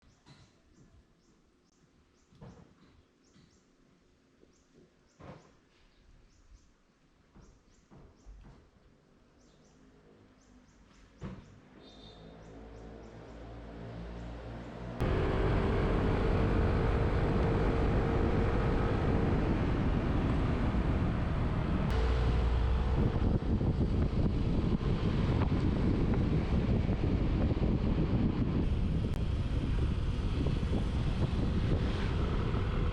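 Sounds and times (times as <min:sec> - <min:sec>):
vehicle engine running: 0:15.0 - 0:32.9
wind rushing over microphone: 0:15.0 - 0:32.9.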